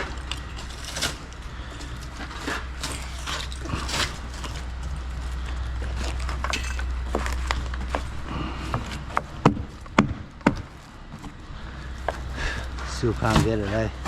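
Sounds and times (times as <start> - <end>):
steady low hum: 0.0 - 14.0
sharp knocks: 9.4 - 10.7.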